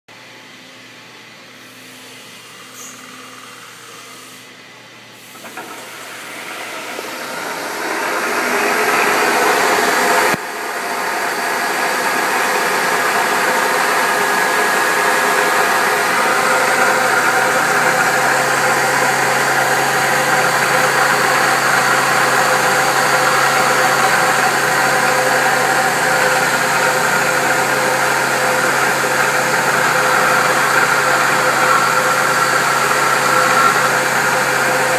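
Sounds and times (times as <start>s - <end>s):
cnc mill whining: 5.2s - 34.9s.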